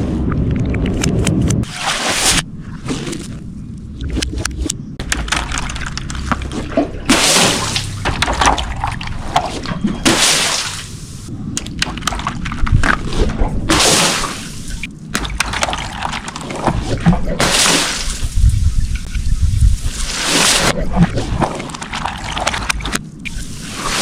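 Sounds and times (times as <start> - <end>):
liquid sloshing and splashing: 0.5 - 11.0, 11.6 - 18.5, 19.8 - 24.0
small crackles and clicks: 4.0 - 6.5, 21.6 - 23.4.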